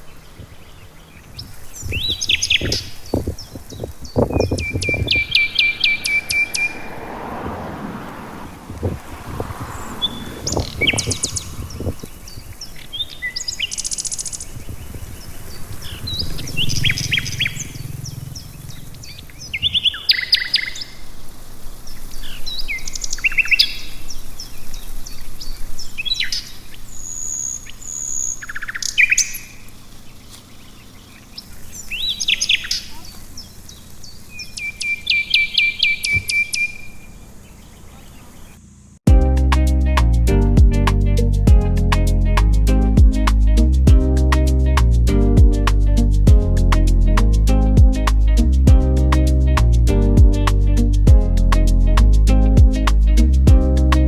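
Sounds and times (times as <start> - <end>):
songbirds singing: 0.0 - 39.0.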